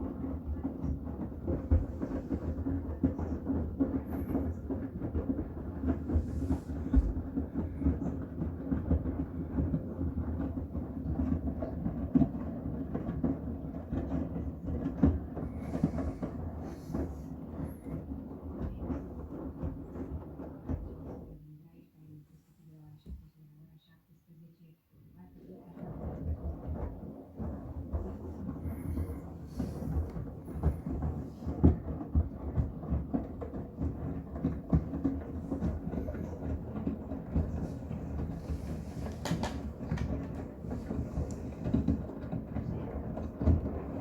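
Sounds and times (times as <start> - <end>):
thuds of tumbling laundry: 0.0 - 21.0, 26.0 - 44.0
washing machine drum rumble: 26.0 - 44.0.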